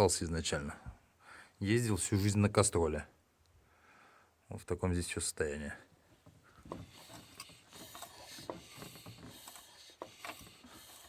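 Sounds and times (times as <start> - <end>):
metal parts clicking and knocking: 6.7 - 11.0.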